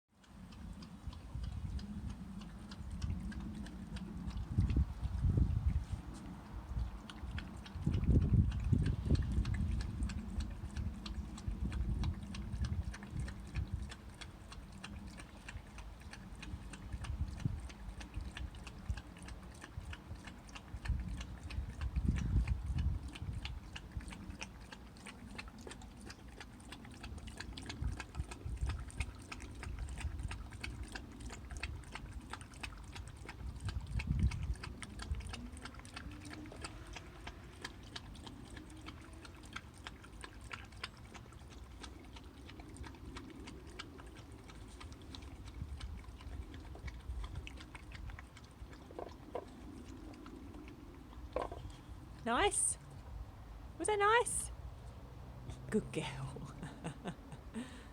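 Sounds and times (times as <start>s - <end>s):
dog lapping liquid: 0.2s - 57.9s.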